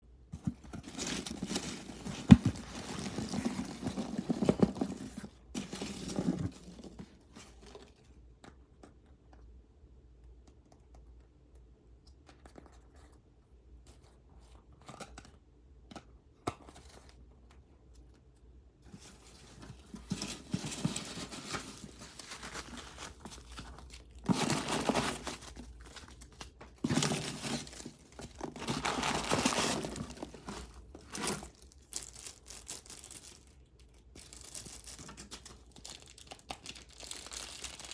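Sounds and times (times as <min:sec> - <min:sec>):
packaging tearing and crinkling: 0:00.8 - 0:07.0, 0:19.9 - 0:37.9.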